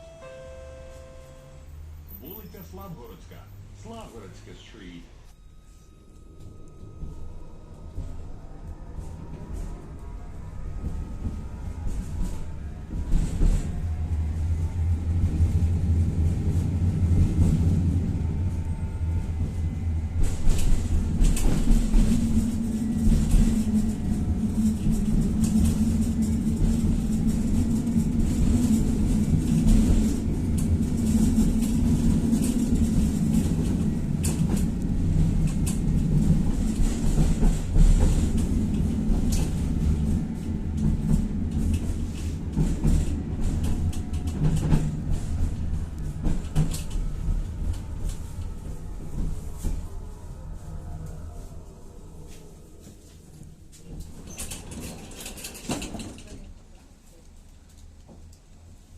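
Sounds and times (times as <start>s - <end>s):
tram rumbling along track: 0.0s - 58.9s
humming tone: 5.3s - 35.8s.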